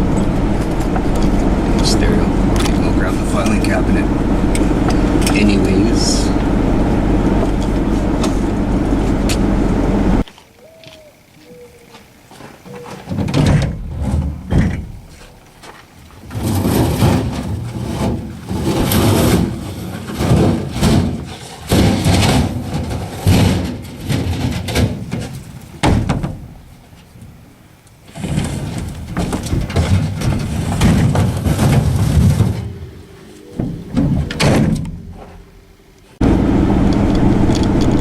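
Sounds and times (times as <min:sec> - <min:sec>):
junk knocking and banging: 0:00.0 - 0:10.2, 0:13.0 - 0:15.2, 0:16.3 - 0:26.7, 0:28.1 - 0:33.0, 0:33.6 - 0:35.5.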